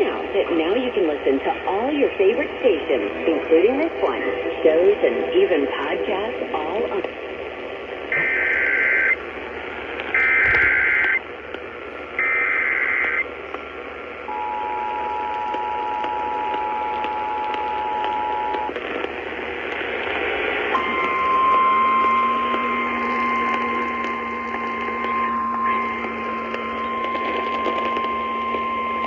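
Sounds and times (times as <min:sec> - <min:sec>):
radio static: 0:00.0 - 0:29.0
digital data bursts: 0:08.1 - 0:09.2, 0:10.1 - 0:11.2, 0:20.7 - 0:29.0
steady tone: 0:20.1 - 0:29.0
two-tone attention signal: 0:20.7 - 0:29.0.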